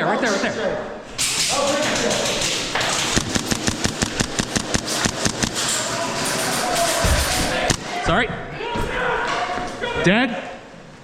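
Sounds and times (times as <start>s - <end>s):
airsoft gun rapid firing: 2.4s - 5.8s, 7.3s - 8.0s.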